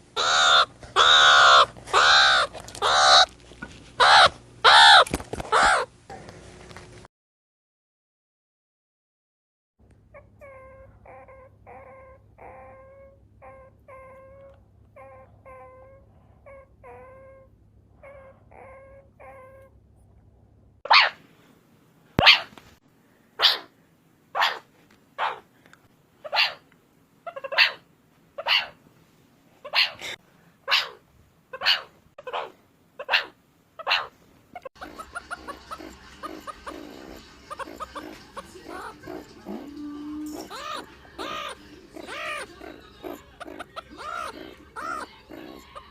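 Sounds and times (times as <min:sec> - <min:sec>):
meerkat chirping calls: 0:00.2 - 0:03.3, 0:04.0 - 0:05.9, 0:10.1 - 0:19.7, 0:20.9 - 0:21.2, 0:22.2 - 0:22.5, 0:23.4 - 0:23.7, 0:24.4 - 0:25.4, 0:26.2 - 0:26.6, 0:27.2 - 0:27.8, 0:28.4 - 0:28.8, 0:29.6 - 0:45.9.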